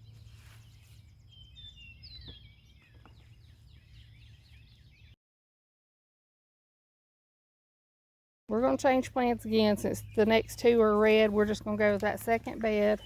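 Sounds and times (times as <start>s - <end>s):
birds chirping and trilling: 0.0s - 5.2s, 8.5s - 13.0s.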